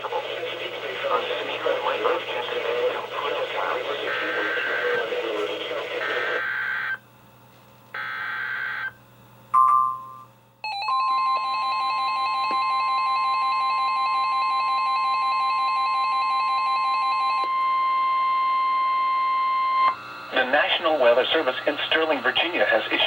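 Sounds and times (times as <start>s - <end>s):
steady high alarm tone: 8.0s - 9.0s, 9.6s - 20.3s
two-tone beep: 9.6s - 10.3s.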